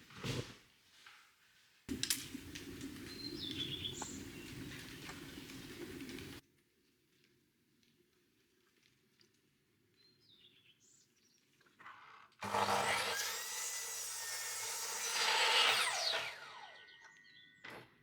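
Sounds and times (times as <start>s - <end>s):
power saw cutting wood: 12.4s - 17.4s.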